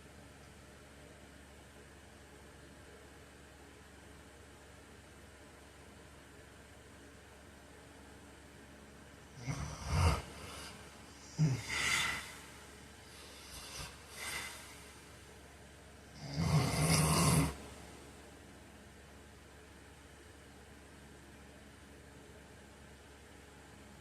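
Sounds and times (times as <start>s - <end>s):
steady hiss: 9.2s - 18.4s
man snoring: 9.4s - 15.0s, 16.2s - 17.7s
faint breaths: 9.4s - 15.4s.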